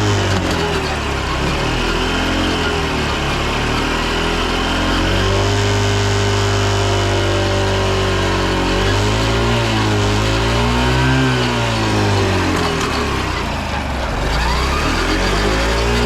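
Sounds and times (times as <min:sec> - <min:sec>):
motorcycle engine running: 0:00.0 - 0:16.0.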